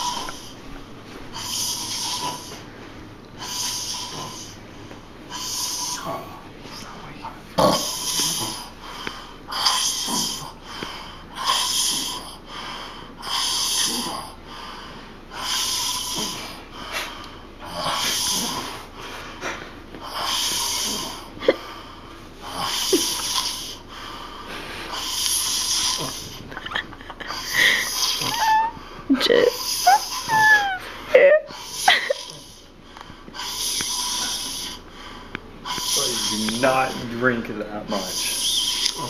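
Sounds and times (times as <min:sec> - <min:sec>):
man snoring: 0:00.0 - 0:00.6, 0:01.3 - 0:02.6, 0:03.4 - 0:04.6, 0:05.3 - 0:06.8, 0:07.6 - 0:12.5, 0:13.2 - 0:14.5, 0:15.3 - 0:19.0, 0:20.1 - 0:21.6, 0:22.4 - 0:26.5, 0:27.3 - 0:28.8, 0:33.3 - 0:34.9, 0:35.6 - 0:39.0.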